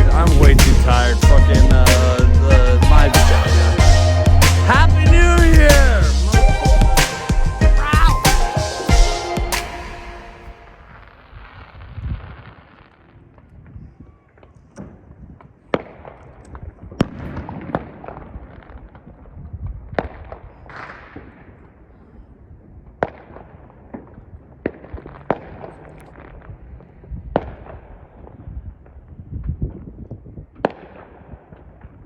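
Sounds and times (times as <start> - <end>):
fireworks bangs: 0.2 - 21.8, 23.0 - 29.0
rumble of distant fireworks: 10.6 - 32.0.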